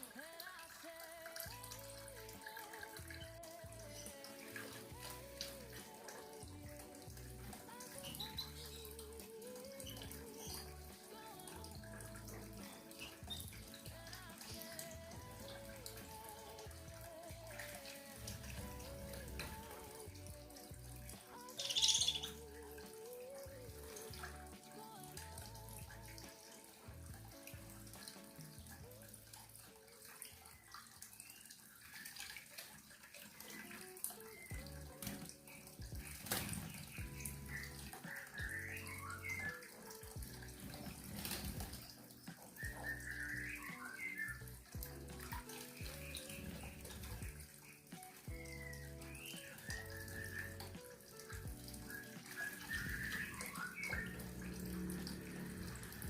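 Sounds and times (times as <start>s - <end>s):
quiet background music: 0.0s - 56.0s
water splashing and running: 0.0s - 56.0s
short high bird chirps: 21.6s - 22.4s
whistled bird chirps: 21.6s - 22.4s, 37.0s - 39.8s, 42.6s - 44.6s, 48.3s - 50.9s, 51.8s - 54.2s
bird splashing in water: 29.3s - 56.0s.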